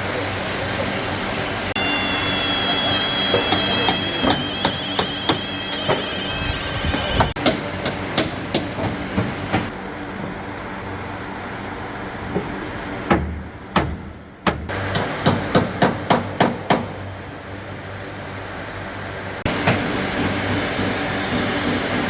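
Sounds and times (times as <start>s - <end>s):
steady high whine: 0.0s - 7.4s
hammer striking metal: 1.8s - 6.3s, 7.0s - 9.7s.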